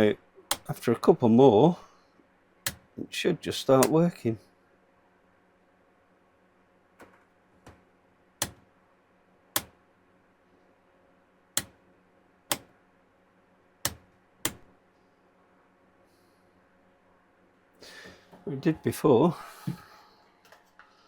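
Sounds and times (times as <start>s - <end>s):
power switch clicking: 0.5s - 0.7s, 2.6s - 2.8s, 8.4s - 8.6s, 11.6s - 11.8s, 12.5s - 12.7s, 13.8s - 14.6s.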